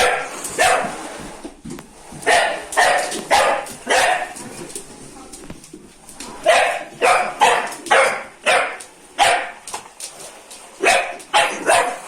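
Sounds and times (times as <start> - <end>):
puppy barking: 0.0 - 1.0, 2.2 - 4.4, 6.4 - 9.6, 10.8 - 12.0.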